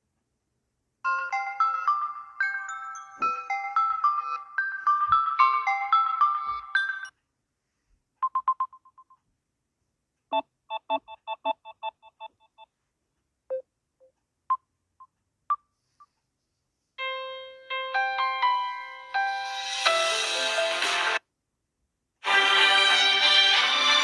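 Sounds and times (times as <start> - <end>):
melodic ringtone: 1.0 - 7.1, 17.0 - 20.5
phone beeps: 8.2 - 9.2, 10.3 - 12.7.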